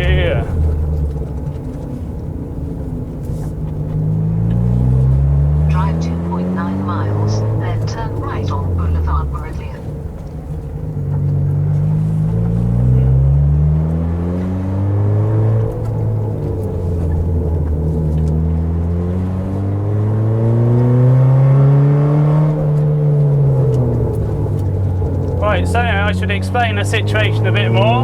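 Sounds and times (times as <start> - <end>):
car engine accelerating hard: 0.0 - 28.0.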